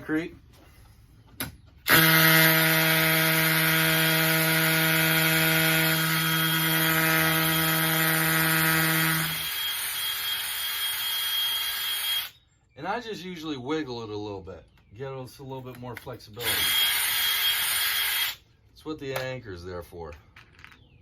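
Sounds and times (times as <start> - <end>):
hammer drill boring into concrete: 1.9 - 12.4, 16.4 - 18.4.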